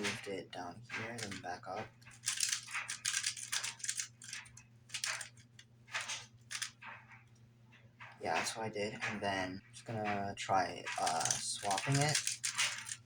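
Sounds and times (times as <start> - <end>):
puzzle cube plastic turning: 0.0 - 6.8, 10.9 - 13.0
low electrical hum: 0.0 - 13.0.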